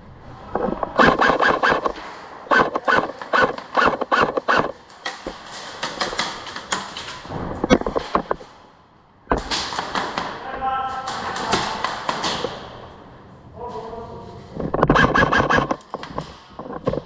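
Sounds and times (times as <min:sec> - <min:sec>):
airsoft rifles firing: 0:00.6 - 0:08.6, 0:09.3 - 0:13.0.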